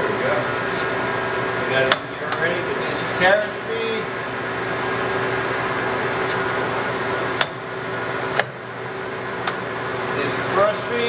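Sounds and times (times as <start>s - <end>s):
lathe running hum: 0.0s - 11.0s.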